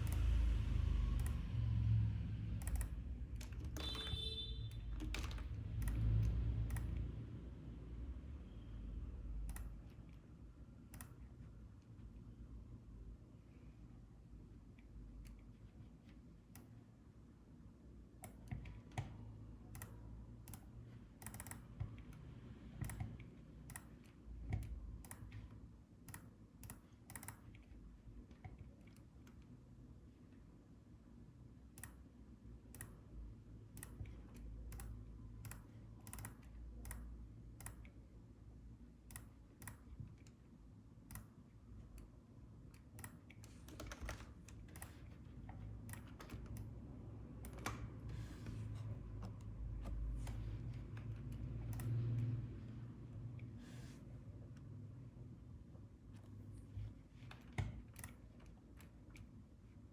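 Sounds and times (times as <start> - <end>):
keyboard and mouse clicking: 0.0 - 0.5, 1.2 - 1.4, 2.5 - 7.2, 9.4 - 10.2, 10.9 - 11.3, 18.2 - 27.7, 31.7 - 32.0, 33.7 - 38.0, 39.0 - 40.4, 41.0 - 42.1, 42.7 - 52.4, 57.2 - 59.4
low steady hum: 0.0 - 59.9.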